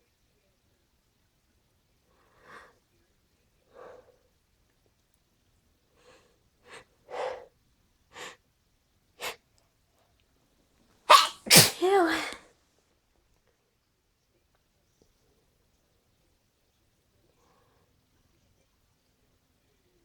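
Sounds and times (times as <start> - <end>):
person sneezing: 11.1 - 12.4.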